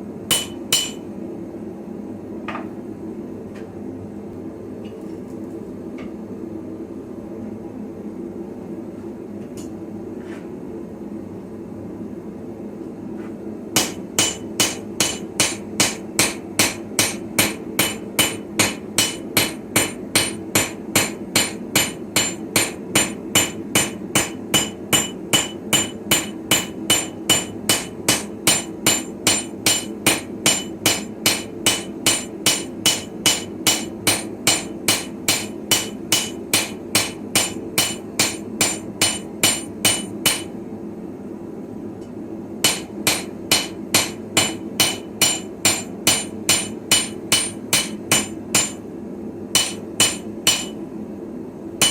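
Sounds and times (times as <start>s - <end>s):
steady hum: 0.0s - 4.8s, 5.5s - 51.9s
hammer ringing on anvil: 0.3s - 1.1s, 13.8s - 40.5s, 42.6s - 48.8s, 49.6s - 50.8s.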